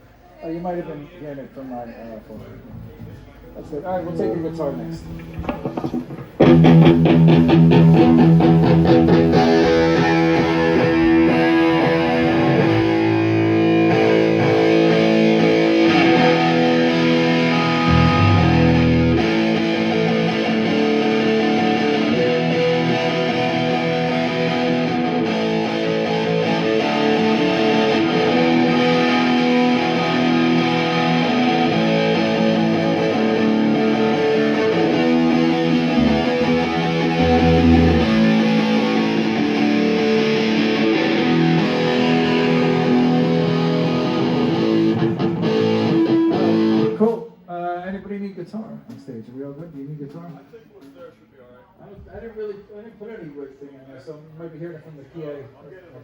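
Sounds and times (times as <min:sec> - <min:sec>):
distorted electric guitar chords: 0:05.2 - 0:47.0.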